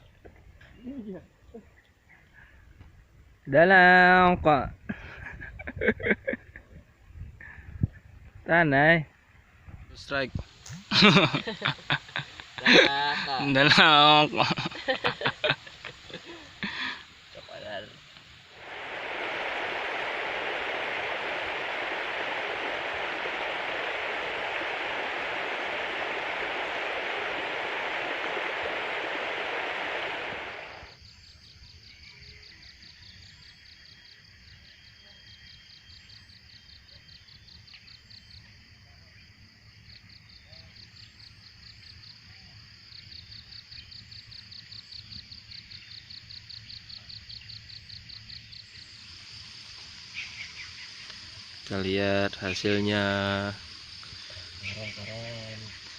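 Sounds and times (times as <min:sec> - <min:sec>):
insects trilling: 0:08.5 - 0:55.9
loud rushing noise: 0:18.5 - 0:30.9
faint bird chirps: 0:30.7 - 0:55.9.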